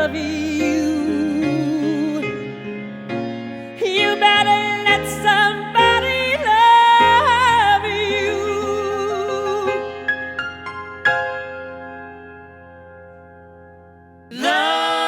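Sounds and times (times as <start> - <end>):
person singing with vibrato: 0.0 - 2.4, 3.8 - 9.8, 14.3 - 15.0.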